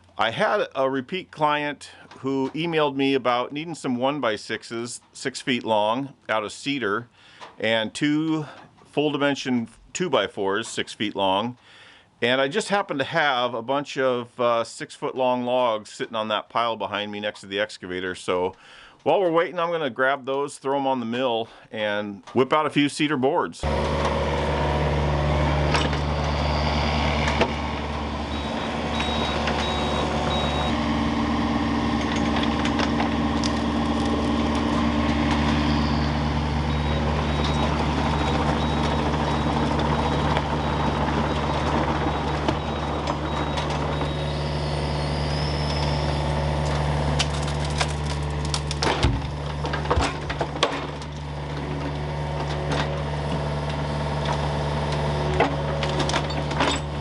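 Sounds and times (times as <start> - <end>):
heavy machine engine running: 23.6 - 57.0
faint beeping: 25.9 - 30.8.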